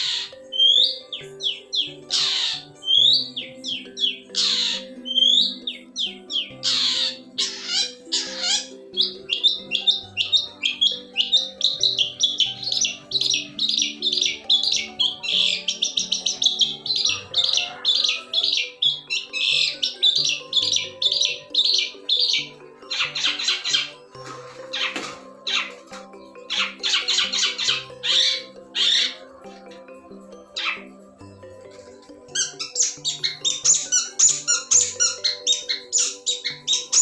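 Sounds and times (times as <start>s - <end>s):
bird harsh screeches: 0.0s - 3.6s, 4.3s - 5.8s, 6.4s - 25.8s, 26.5s - 29.3s
bird high chattering notes: 0.0s - 31.0s, 31.8s - 37.0s
soft background music: 0.0s - 37.0s.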